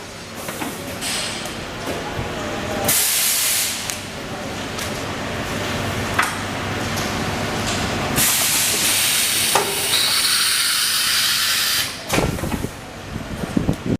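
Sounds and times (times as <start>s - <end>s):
welding machine hissing: 8.2s - 12.0s.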